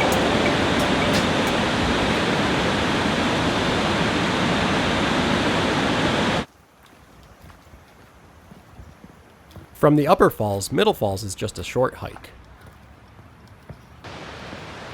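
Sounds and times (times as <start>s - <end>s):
waterfall rushing: 0.0s - 6.5s, 14.1s - 14.9s.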